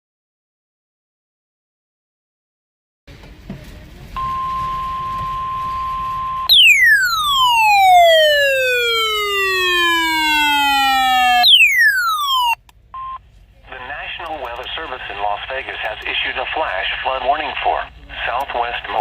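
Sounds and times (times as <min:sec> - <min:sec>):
harsh falling electronic siren: 0:06.5 - 0:12.6
steady electronic alert tone: 0:06.5 - 0:12.6.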